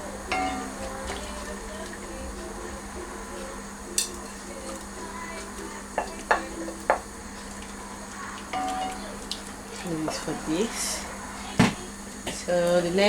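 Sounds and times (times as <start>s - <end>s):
wooden spoon stirring soup: 0.0s - 12.4s
spoon knocking against pot: 6.0s - 7.1s.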